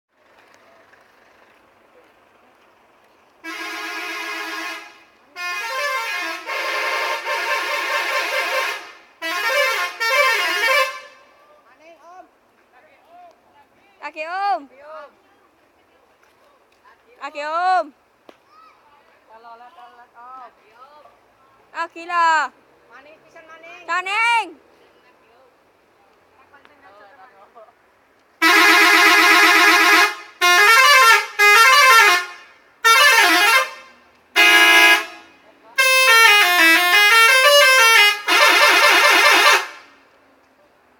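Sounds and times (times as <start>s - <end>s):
musical air horn on a bus: 3.4s - 11.3s, 28.4s - 40.0s.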